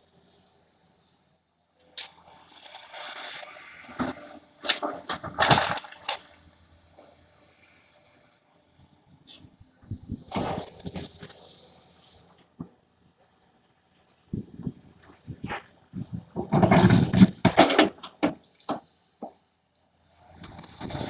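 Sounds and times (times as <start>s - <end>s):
excavator scraping rubble: 2.1s - 7.7s, 9.9s - 12.0s, 16.4s - 19.4s, 20.2s - 21.0s.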